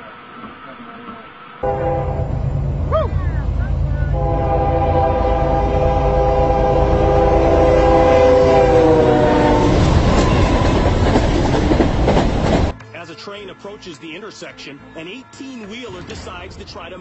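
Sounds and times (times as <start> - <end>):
train rumble and rail clatter: 0.4 - 12.8
locomotive air horn blast: 1.6 - 10.7.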